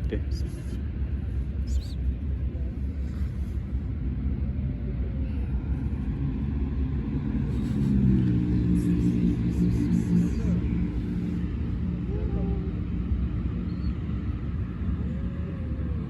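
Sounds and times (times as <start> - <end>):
low outdoor rumble: 0.0 - 16.0
faint high chirp: 13.5 - 14.1.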